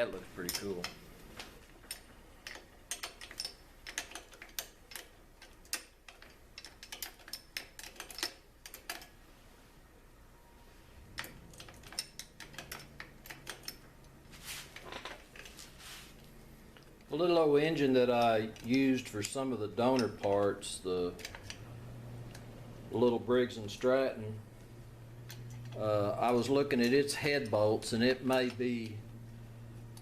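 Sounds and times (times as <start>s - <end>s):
metal parts and tools clinking: 0.1s - 9.2s, 11.2s - 15.7s, 17.7s - 21.7s.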